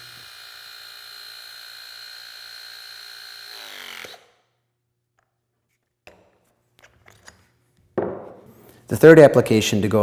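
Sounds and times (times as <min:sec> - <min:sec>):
hydraulic tool motor whining: 0:00.0 - 0:04.4.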